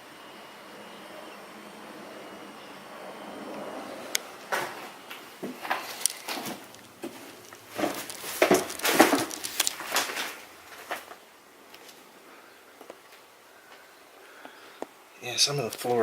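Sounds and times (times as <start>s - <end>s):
footsteps crunching on debris: 4.4s - 12.1s.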